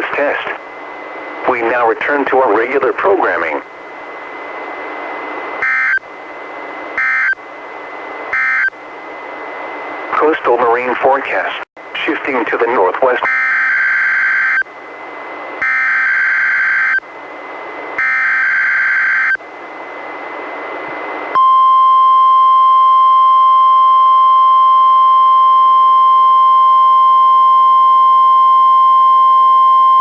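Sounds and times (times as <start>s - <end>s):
radio hiss: 0.0s - 0.7s, 1.4s - 5.4s, 10.1s - 13.3s
steady warning alarm tone: 1.8s - 9.4s, 13.2s - 20.4s.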